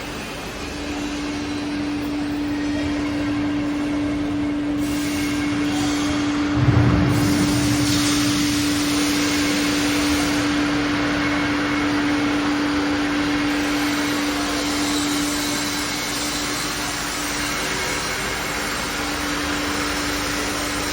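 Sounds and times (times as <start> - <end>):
washing machine motor hum: 1.7 - 16.3.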